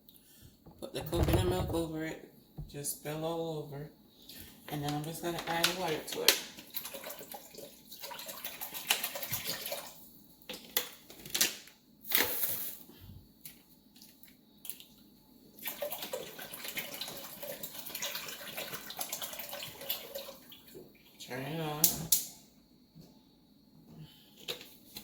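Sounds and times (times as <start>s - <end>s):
water running into a pot: 5.7s - 10.0s, 15.6s - 21.0s.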